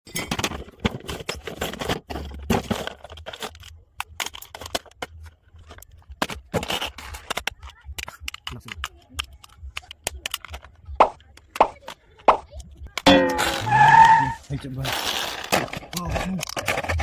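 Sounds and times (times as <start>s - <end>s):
packaging rustling and tearing: 0.6s - 7.7s, 14.8s - 17.0s
short scrapes: 13.2s - 15.5s.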